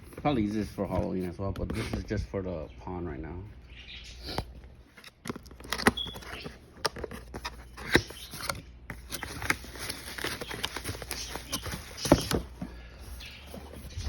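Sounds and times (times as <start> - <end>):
packaging rustling: 4.9 - 14.0
packaging clicks and knocks: 5.0 - 12.7.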